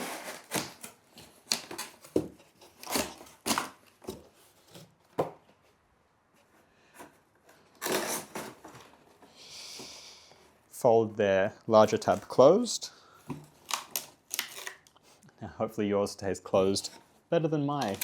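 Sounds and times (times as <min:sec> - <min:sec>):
cardboard scraping on cardboard: 0:00.0 - 0:04.9, 0:07.8 - 0:09.0.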